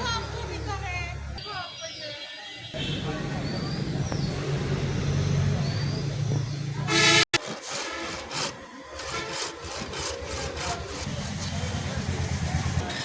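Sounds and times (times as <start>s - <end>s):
loud horn toot: 6.9s - 8.3s
rhythmic scraping strokes: 7.4s - 13.0s
low engine-like hum: 11.0s - 13.0s.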